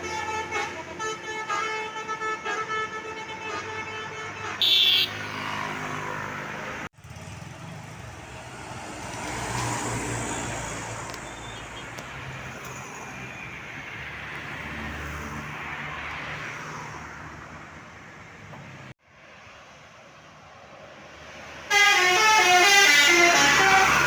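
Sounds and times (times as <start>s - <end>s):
high-pitched horn burst: 0.0s - 5.3s, 21.7s - 24.0s
multi-tone bus horn tune: 0.0s - 5.7s, 21.7s - 24.0s
vehicle engine and road noise: 0.0s - 24.0s.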